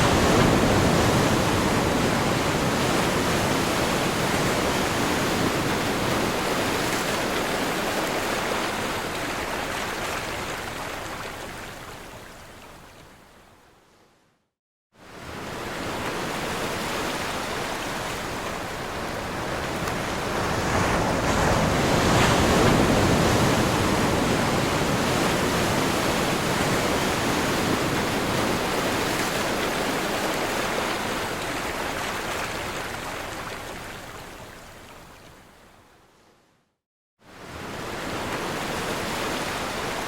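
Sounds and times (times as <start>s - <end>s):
ocean wave breaking: 0.0s - 9.0s.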